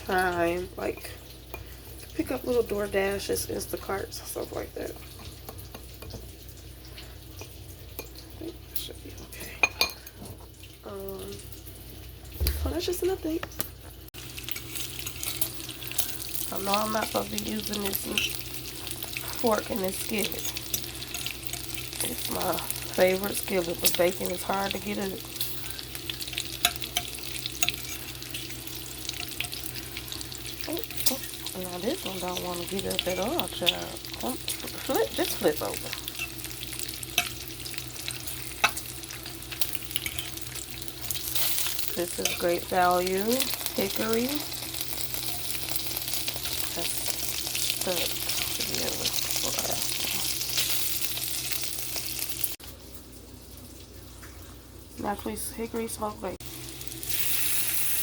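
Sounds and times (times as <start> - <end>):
bacon sizzling in a skillet: 0.0 - 58.0
metal fork clicking on pan: 26.3 - 28.5.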